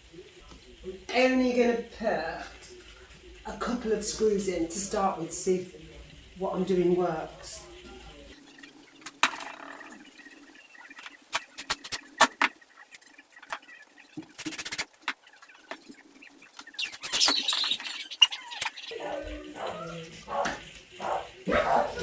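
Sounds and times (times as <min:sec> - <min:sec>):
high-pitched chirping: 0:08.3 - 0:20.4.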